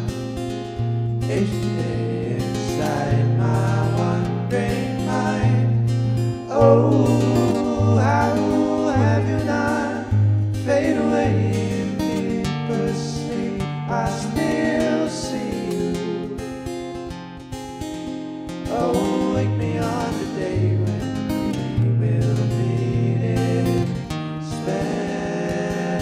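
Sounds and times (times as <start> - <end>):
acoustic guitar strumming: 0.0 - 26.0
person singing: 1.3 - 5.8, 6.5 - 16.7, 18.7 - 21.0.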